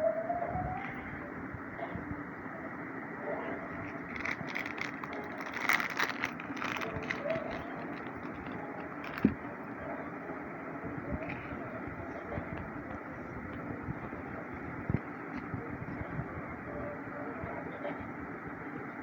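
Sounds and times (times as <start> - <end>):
steady background hum: 0.0 - 19.0
packaging crinkling and clicking: 3.8 - 9.5.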